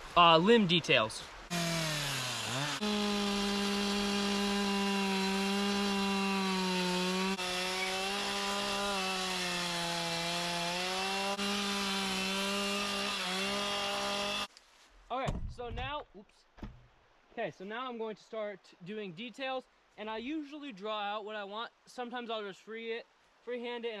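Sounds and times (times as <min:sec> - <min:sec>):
chainsaw cutting wood: 0:01.5 - 0:14.5.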